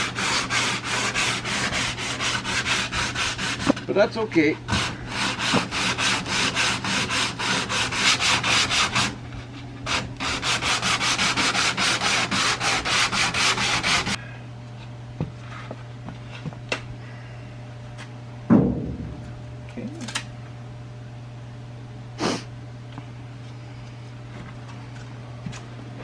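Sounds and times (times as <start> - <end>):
sandpaper scrubbing painted steel: 0.0 - 3.8, 4.7 - 9.2, 9.9 - 14.2
low steady hum: 0.0 - 26.0
thump: 18.5 - 19.2.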